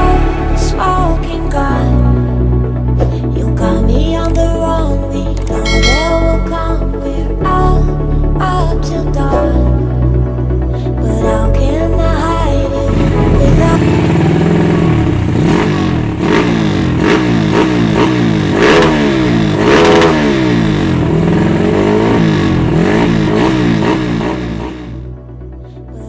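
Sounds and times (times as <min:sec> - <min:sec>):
motorcycle engine revving: 0:12.9 - 0:25.1.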